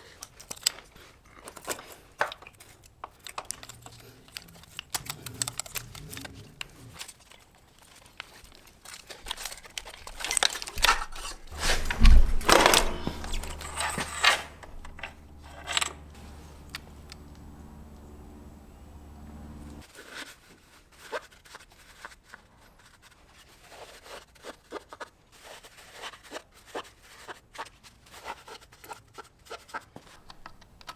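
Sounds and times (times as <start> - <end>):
parts and tools clinking: 10.0 - 19.8
steady low hum: 11.5 - 19.8.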